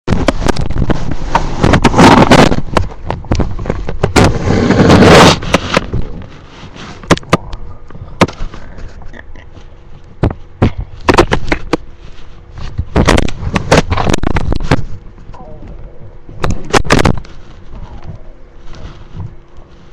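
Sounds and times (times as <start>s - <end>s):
rubbing noise: 0.1s - 7.2s, 16.4s - 19.9s
sharp pops and clicks: 7.0s - 7.6s, 16.4s - 17.3s
stomach growling and gurgling: 7.1s - 9.7s, 12.8s - 19.7s.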